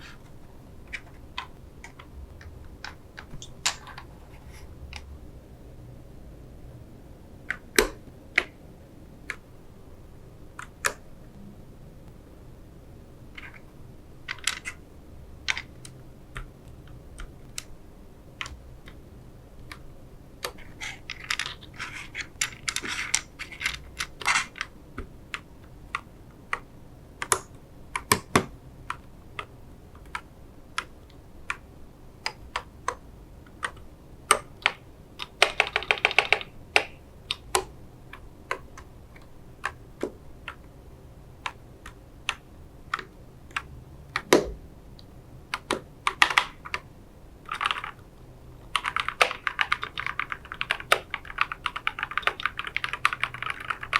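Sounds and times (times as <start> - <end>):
mechanical keyboard typing: 14.3 - 14.8, 15.4 - 16.5, 20.4 - 24.7, 25.3 - 31.6, 32.2 - 37.7, 45.5 - 46.8, 47.5 - 48.0, 48.7 - 53.9.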